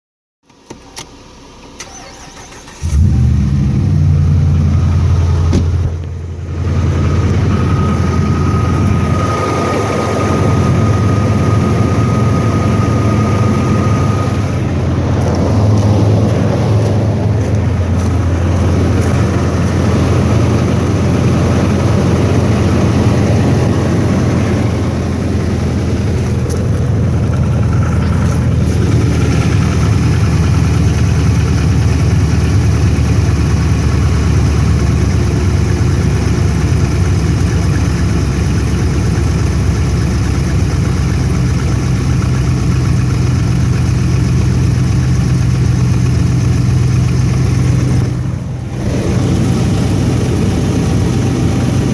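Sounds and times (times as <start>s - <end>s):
car engine idling: 0.5s - 51.9s.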